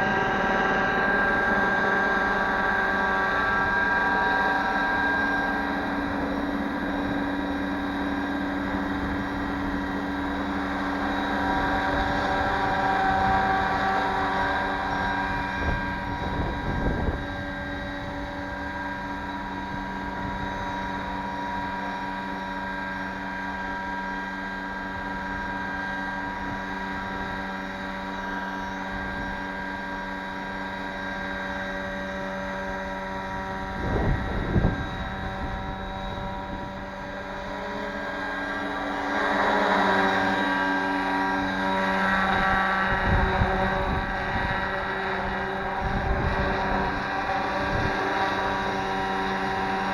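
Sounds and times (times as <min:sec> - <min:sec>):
wind rumbling on microphone: 0:00.0 - 0:21.8, 0:31.1 - 0:49.9
model helicopter rotor whine: 0:00.0 - 0:49.9.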